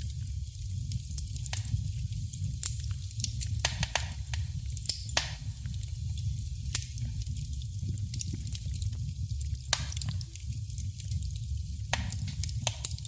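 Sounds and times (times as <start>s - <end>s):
fire hissing: 0.0s - 13.0s
wood fire crackling: 0.0s - 13.0s
logs popping and snapping: 3.4s - 5.5s, 9.7s - 10.2s, 11.9s - 13.0s.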